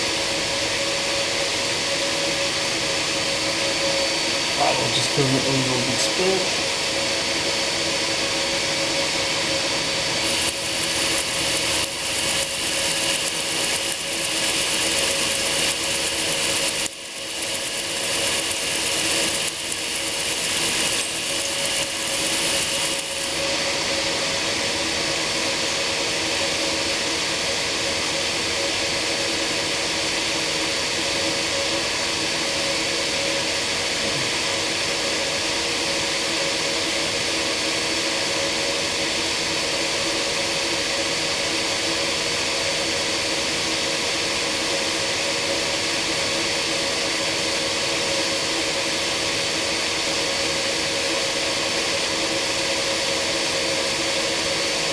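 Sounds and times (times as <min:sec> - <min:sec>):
metal grinding against belt: 0:10.2 - 0:23.4
belt sander motor humming: 0:10.2 - 0:23.6.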